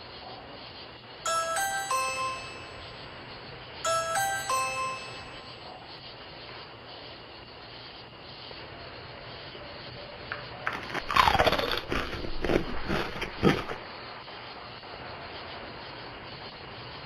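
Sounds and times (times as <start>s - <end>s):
microphone hiss: 0.9s - 6.6s.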